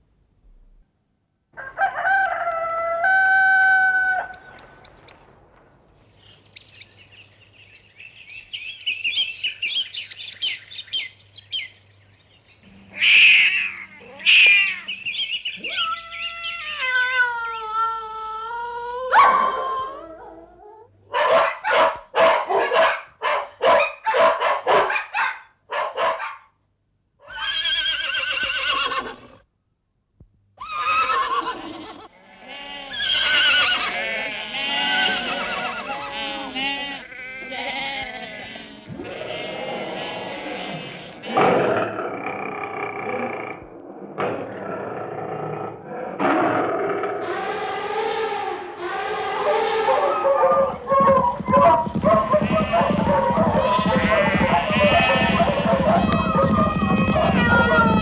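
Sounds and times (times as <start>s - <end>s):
faint high chirping: 8.2s - 17.7s, 47.2s - 58.0s
short loud animal calls: 12.7s - 17.0s, 46.9s - 58.0s
animal calls sliding down in pitch: 12.7s - 17.7s, 34.7s - 36.6s, 46.1s - 58.0s.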